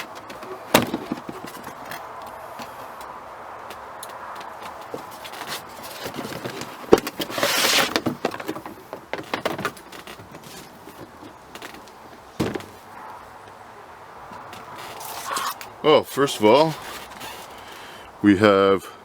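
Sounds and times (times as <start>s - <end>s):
packaging rustling: 5.0s - 8.6s.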